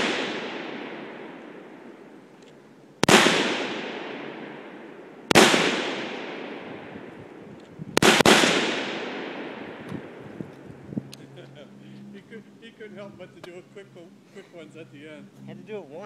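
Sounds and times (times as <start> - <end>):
rifle shots echoing: 0.0 - 2.2, 3.0 - 10.3.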